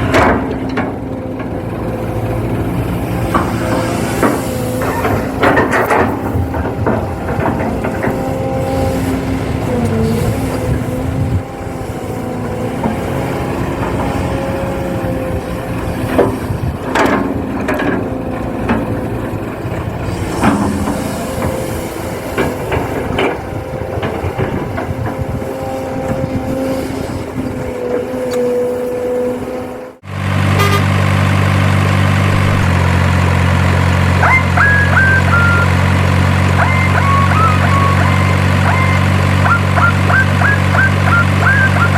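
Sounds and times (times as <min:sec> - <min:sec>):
electric motors and gears whining: 0:00.0 - 0:41.9
simulated diesel engine drone: 0:00.0 - 0:41.9.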